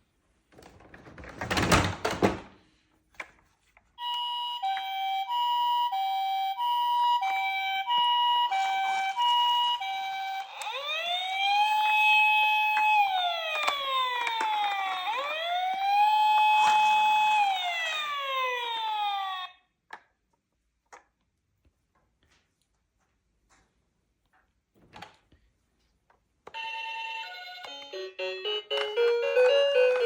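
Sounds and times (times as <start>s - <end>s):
toy electronic siren: 4.0s - 19.6s, 26.5s - 30.0s.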